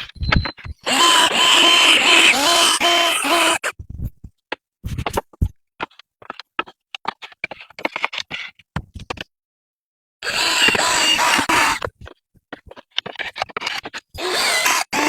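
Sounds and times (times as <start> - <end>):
clicks and scrapes on bamboo: 3.6 - 9.3, 10.7 - 15.0.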